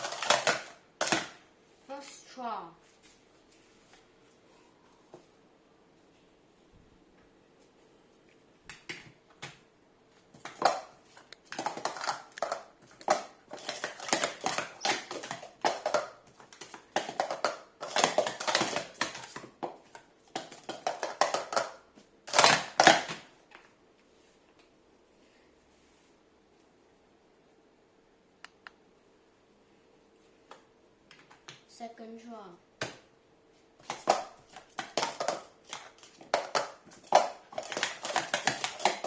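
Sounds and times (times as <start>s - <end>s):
plastic cups clattering: 0.0s - 1.4s, 10.2s - 23.4s, 33.8s - 39.0s.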